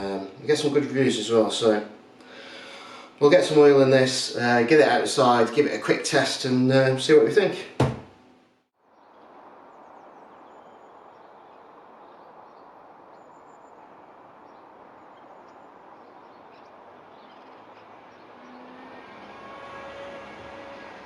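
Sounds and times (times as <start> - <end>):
outdoor background noise: 0.0 - 21.0
faint bird chirps: 8.9 - 18.8.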